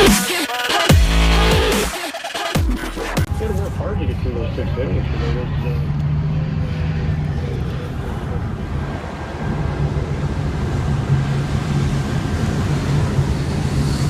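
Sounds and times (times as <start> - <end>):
vehicle engine humming: 2.6 - 14.0
road and wind noise: 3.2 - 14.0.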